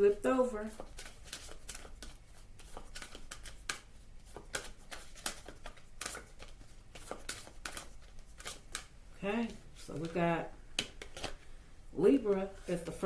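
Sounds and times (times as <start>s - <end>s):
cards being shuffled: 0.7s - 10.2s, 10.8s - 11.4s.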